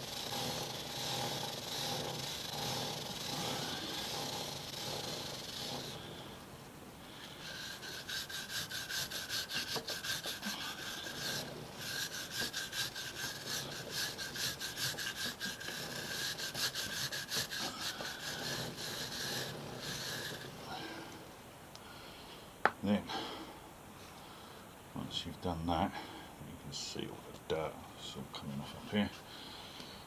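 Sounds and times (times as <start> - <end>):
brush scrubbing a chain: 0.0 - 6.4, 7.2 - 20.7.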